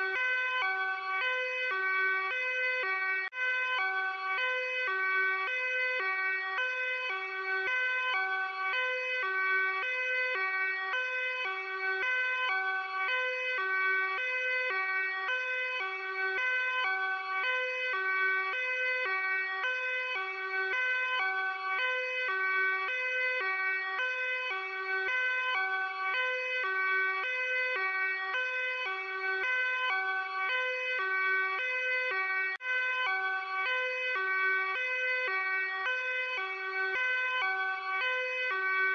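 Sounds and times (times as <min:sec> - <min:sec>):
police two-tone siren: 0:00.0 - 0:38.9.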